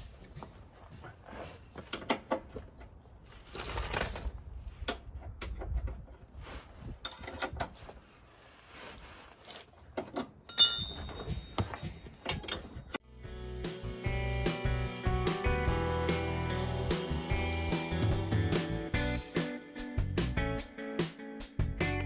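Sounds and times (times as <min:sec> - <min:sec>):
sharp ringing metal clink: 0:10.5 - 0:11.6.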